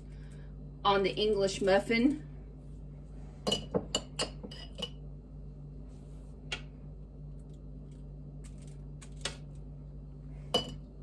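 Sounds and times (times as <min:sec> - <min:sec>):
steady low hum: 0:00.0 - 0:11.0
spoon clinking against dishes: 0:03.5 - 0:05.0.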